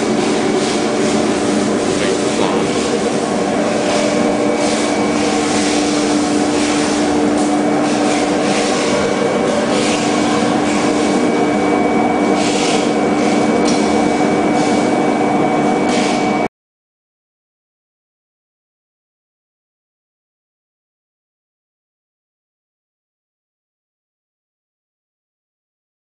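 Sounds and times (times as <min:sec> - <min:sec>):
blade rasping through foam: 0:00.0 - 0:15.0, 0:15.8 - 0:16.4
machine motor hum with whine: 0:00.0 - 0:16.5.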